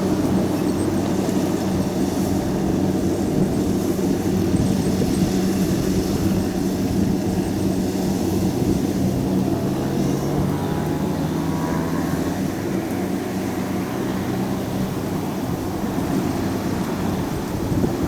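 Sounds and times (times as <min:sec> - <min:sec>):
diesel engine running under load: 0:00.0 - 0:18.0
machinery noise: 0:07.3 - 0:17.7.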